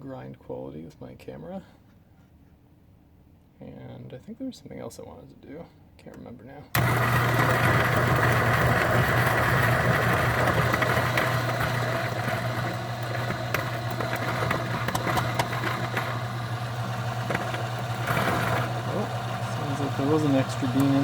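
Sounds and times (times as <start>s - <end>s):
coffee grinder motor grinding: 6.8s - 21.0s.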